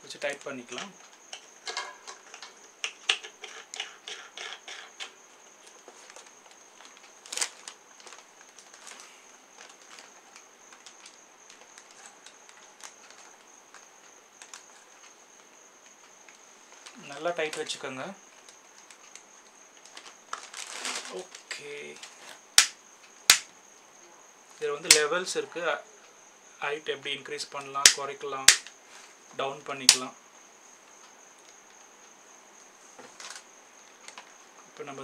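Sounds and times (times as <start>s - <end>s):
plastic fan parts clicking: 27.8s - 28.7s.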